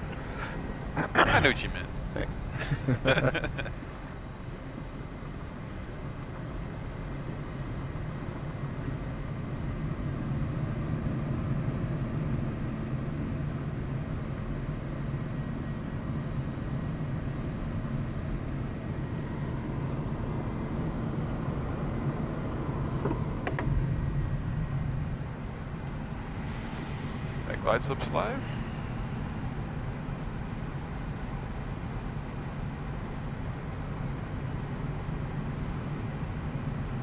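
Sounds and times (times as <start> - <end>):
jet engines and rushing air: 0.0 - 37.0.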